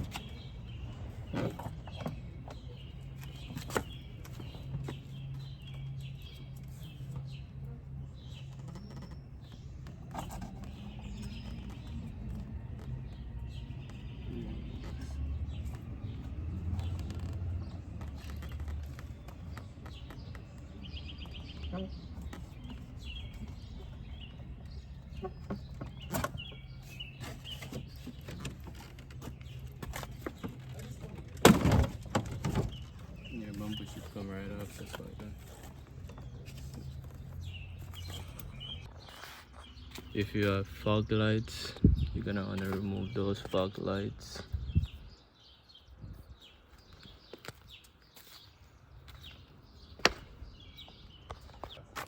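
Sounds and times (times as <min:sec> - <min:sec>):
birds chirping: 0:00.0 - 0:52.0
plastic clacks and knocks: 0:16.7 - 0:37.4.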